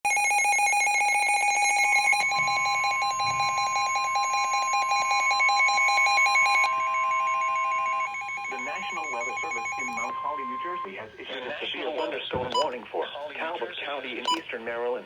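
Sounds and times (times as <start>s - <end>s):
long steady alarm tone: 0.1s - 12.7s
steady high tones: 1.9s - 12.8s
fast pulsing electronic beep: 2.2s - 10.9s.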